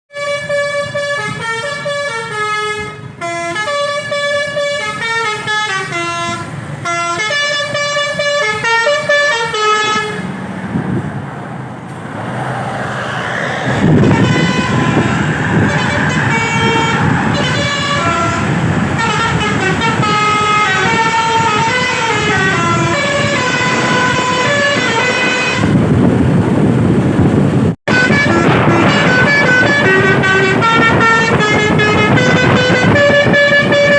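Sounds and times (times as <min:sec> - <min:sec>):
multi-tone air horn melody: 0:00.1 - 0:10.3, 0:13.8 - 0:25.9, 0:27.9 - 0:33.9
rushing noise: 0:10.2 - 0:33.9.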